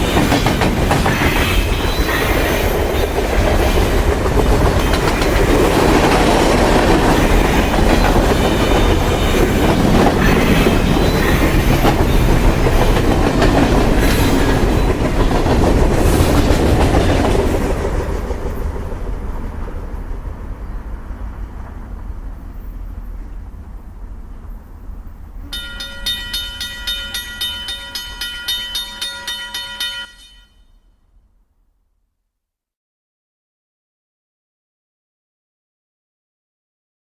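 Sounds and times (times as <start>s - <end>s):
train wheels clattering on rails: 0.0s - 20.2s, 25.6s - 30.5s.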